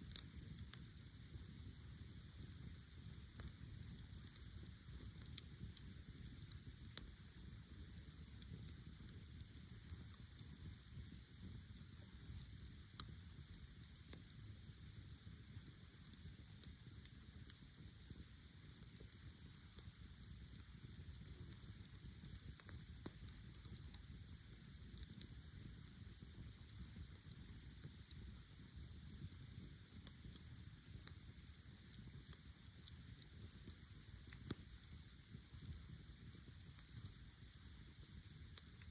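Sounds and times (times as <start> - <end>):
crickets chirping: 0.0 - 38.9
campfire popping: 29.1 - 38.9.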